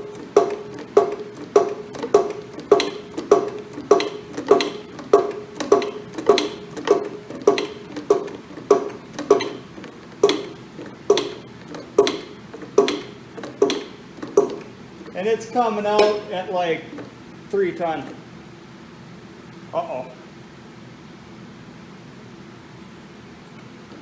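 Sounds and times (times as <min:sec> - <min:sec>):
metallic clanks of hand press: 0:00.0 - 0:15.2, 0:15.9 - 0:17.1.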